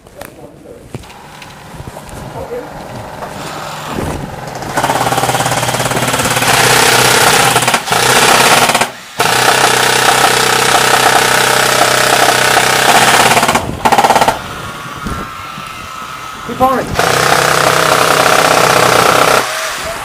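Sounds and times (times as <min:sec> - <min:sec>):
airsoft rifle firing bursts: 0:04.4 - 0:14.4, 0:17.0 - 0:19.6.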